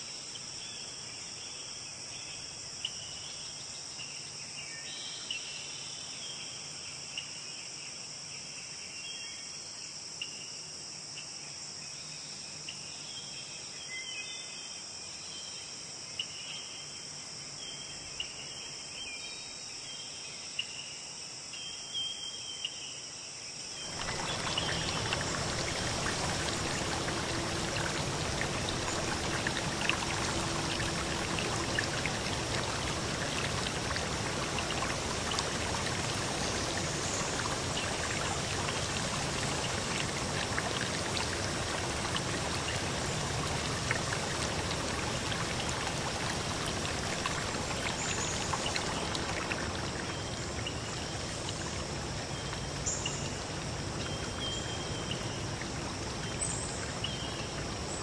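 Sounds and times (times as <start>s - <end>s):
crickets chirping: 22.8s - 57.9s
flowing stream: 23.8s - 58.0s.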